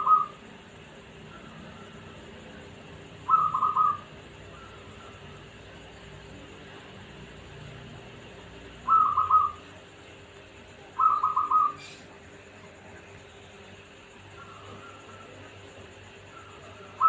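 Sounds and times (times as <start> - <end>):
dove cooing: 0.0 - 0.4, 3.2 - 5.8, 8.8 - 9.7, 11.0 - 12.1.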